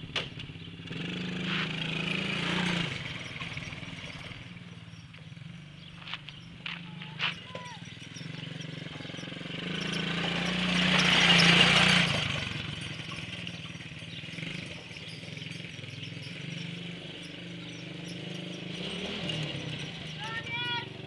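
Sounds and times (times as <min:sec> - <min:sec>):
quad engine running: 0:00.0 - 0:21.0.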